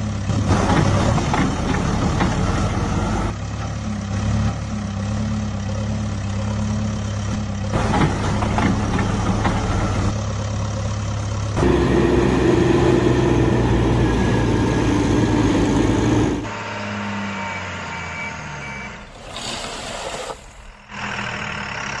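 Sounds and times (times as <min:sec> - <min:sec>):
heavy diesel engines running: 0:00.0 - 0:22.0
reversing beeps: 0:02.0 - 0:03.3, 0:09.2 - 0:10.2, 0:16.5 - 0:19.1.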